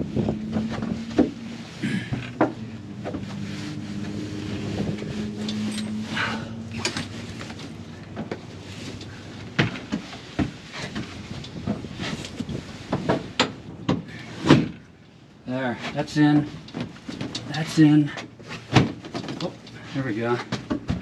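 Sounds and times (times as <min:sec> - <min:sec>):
steady low hum: 0:00.0 - 0:12.6
fabric rustling: 0:00.0 - 0:13.4.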